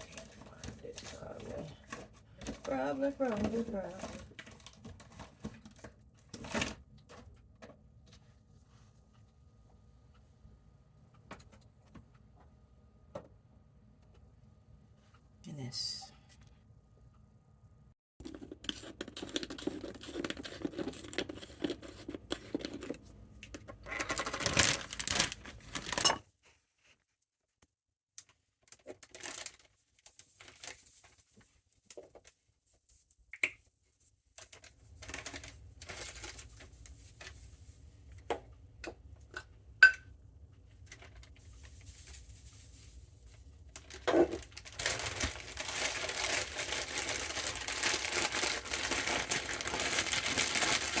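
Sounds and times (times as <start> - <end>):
rustling and scraping: 33.9 - 38.3, 40.6 - 51.0.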